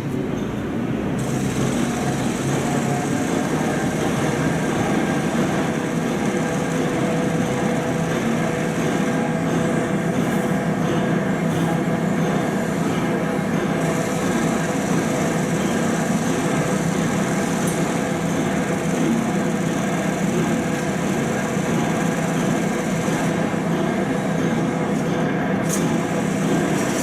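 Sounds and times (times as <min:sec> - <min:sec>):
train diesel engine drone: 0:00.0 - 0:27.0.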